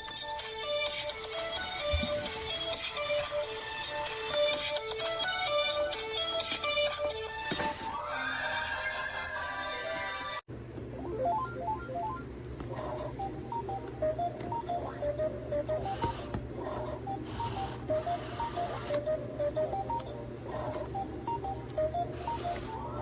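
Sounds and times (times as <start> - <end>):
steady low hum: 10.5 - 23.0
toy claw machine beeping tune: 11.0 - 23.0.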